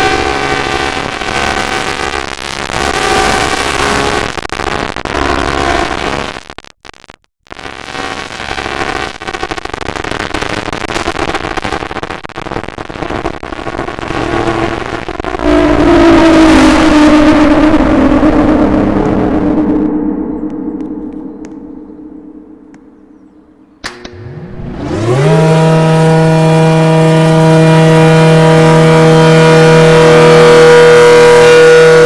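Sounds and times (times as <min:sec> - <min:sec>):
tornado warning siren: 0:00.0 - 0:04.2, 0:13.9 - 0:32.0.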